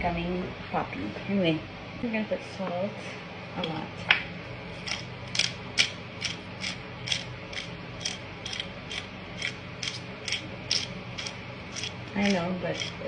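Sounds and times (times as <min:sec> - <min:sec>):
salt grinder clicking: 0:04.8 - 0:13.0.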